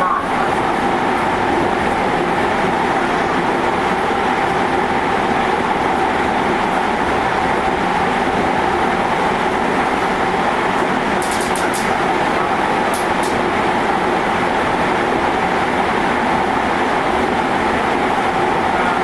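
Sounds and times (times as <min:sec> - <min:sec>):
train wheels rumbling on rail: 0:00.0 - 0:19.0
quick clicks: 0:11.2 - 0:11.9.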